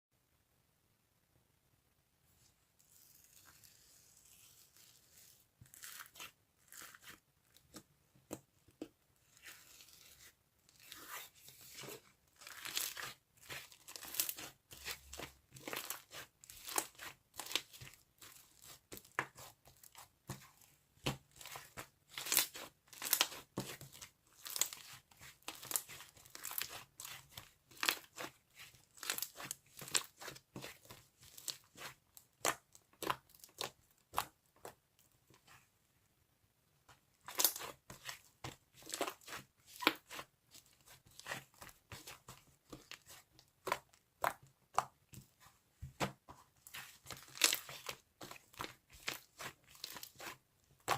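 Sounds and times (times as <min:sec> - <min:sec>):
slime crackling when squished: 0:37.3 - 0:38.2.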